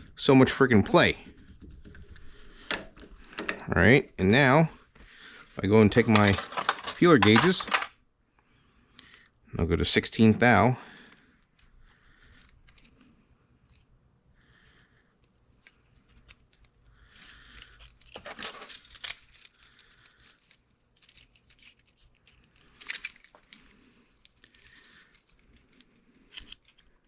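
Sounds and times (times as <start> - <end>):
metal clattering: 6.0 - 7.9
metallic clicks and scrapes: 6.0 - 7.9.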